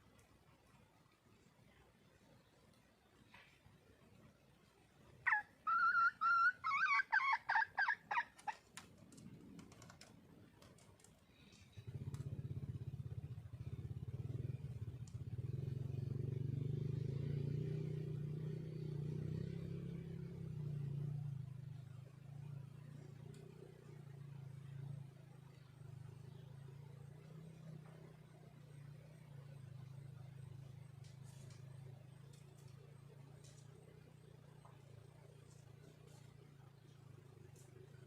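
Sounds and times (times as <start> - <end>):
hen clucking: 5.3 - 8.6.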